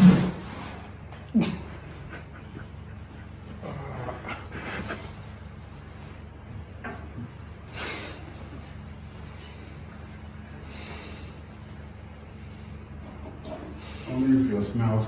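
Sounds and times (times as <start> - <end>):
breathy exhale: 10.5 - 11.5.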